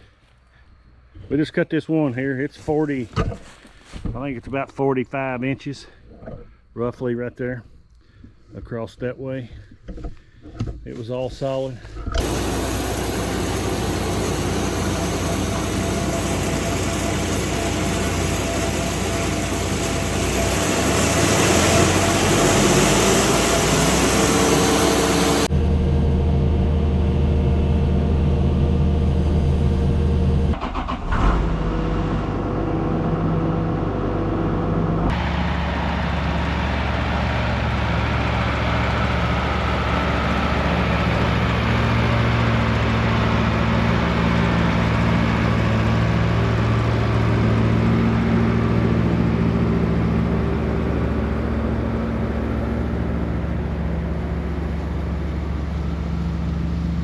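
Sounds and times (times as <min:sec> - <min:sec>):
engine running: 0:12.1 - 0:57.0.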